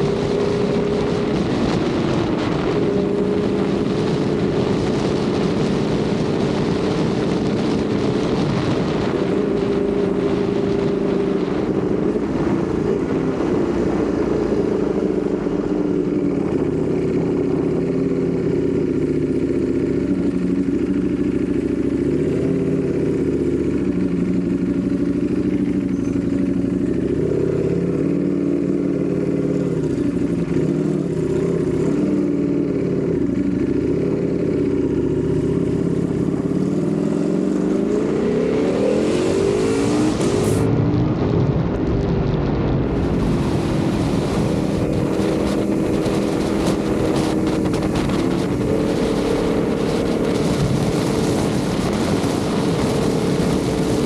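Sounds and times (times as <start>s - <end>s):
wind noise: 0.0s - 19.0s, 35.1s - 54.0s
motorcycle engine revving: 0.0s - 54.0s.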